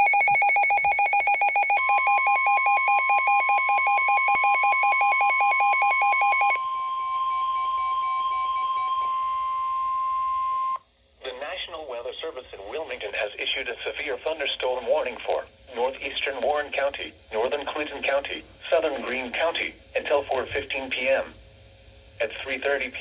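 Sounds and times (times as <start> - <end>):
rapid electronic beeping alarm: 0.0 - 9.4
steady loud alarm tone: 0.0 - 10.8.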